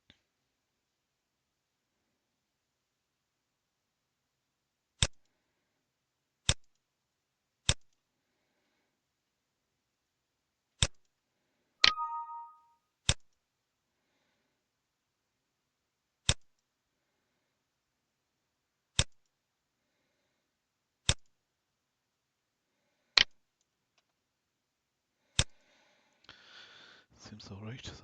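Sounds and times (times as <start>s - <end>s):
two-tone electronic chime: 11.8s - 12.7s.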